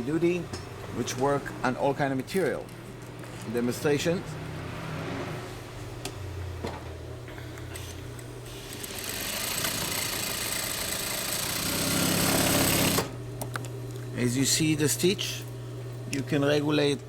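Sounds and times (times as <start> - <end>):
industrial sewing machine stitching: 8.5 - 13.2.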